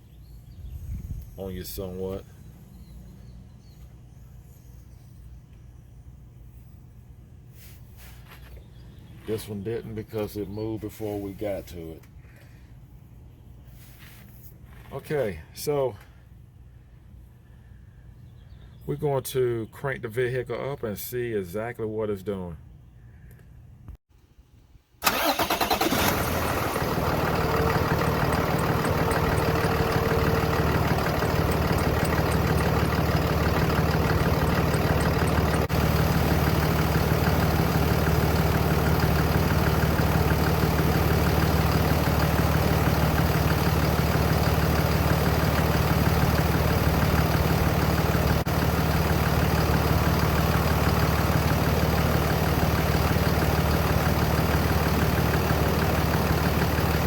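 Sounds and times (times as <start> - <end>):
car engine idling: 25.0 - 57.0.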